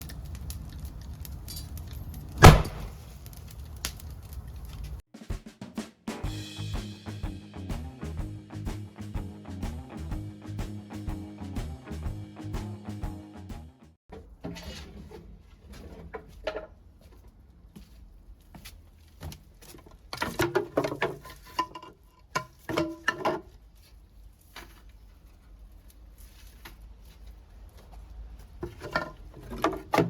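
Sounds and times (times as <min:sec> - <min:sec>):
wood fire crackling and popping: 0:00.0 - 0:05.0.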